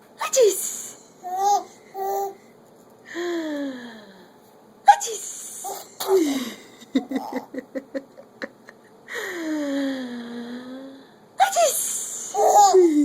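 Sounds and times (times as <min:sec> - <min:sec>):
laughter: 0:06.8 - 0:08.9
woman sneezing: 0:11.4 - 0:12.4.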